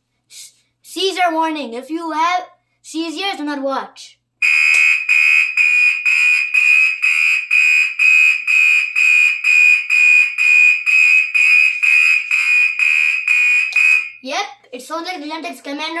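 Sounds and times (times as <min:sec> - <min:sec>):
fire alarm horn beeping: 0:04.4 - 0:14.2.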